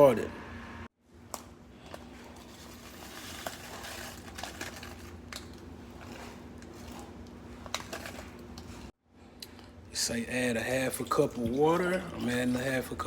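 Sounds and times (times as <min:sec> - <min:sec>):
packaging crinkling: 0:02.2 - 0:08.8.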